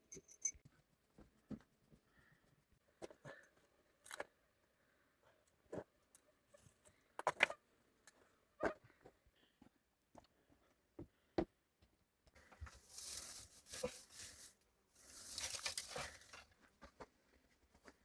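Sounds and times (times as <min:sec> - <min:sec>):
rustling scraping noise: 0:12.6 - 0:16.5.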